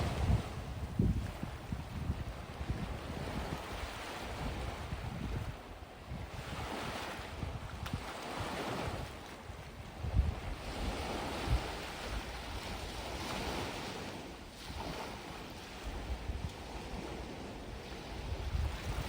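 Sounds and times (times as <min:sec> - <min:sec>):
sea waves on sandy beach: 0:00.0 - 0:19.0
wind buffeting microphone: 0:00.0 - 0:19.0.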